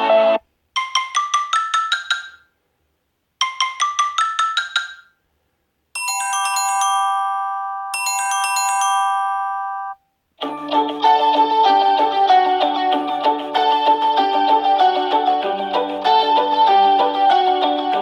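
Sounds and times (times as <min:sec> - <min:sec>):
marimba-like ringtone notes: 0:00.8 - 0:02.4, 0:03.4 - 0:05.1, 0:06.0 - 0:10.0.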